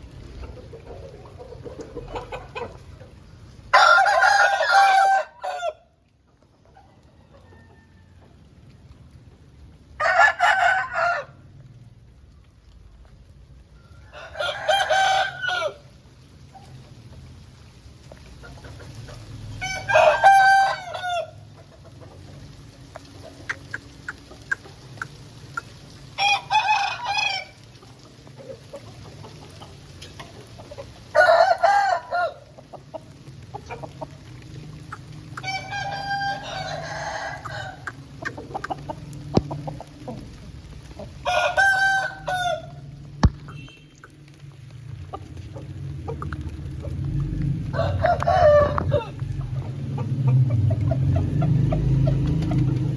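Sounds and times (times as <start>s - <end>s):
rooster crowing: 3.7s - 5.9s, 10.0s - 11.4s, 13.8s - 15.9s, 19.6s - 21.4s, 26.2s - 27.6s, 31.1s - 32.4s, 35.4s - 37.9s, 41.2s - 42.8s, 47.7s - 49.4s
low steady rumble: 42.2s - 52.9s.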